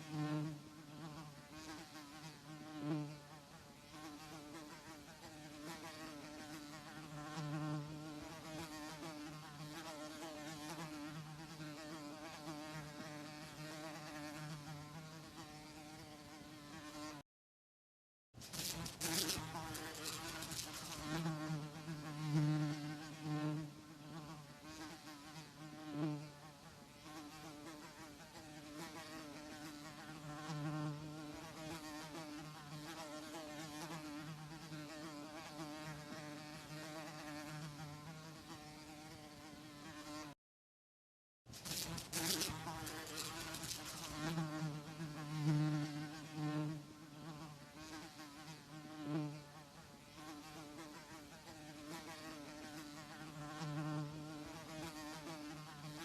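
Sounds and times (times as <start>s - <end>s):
houseflies buzzing: 0.0s - 17.2s, 18.4s - 40.4s, 41.5s - 56.0s.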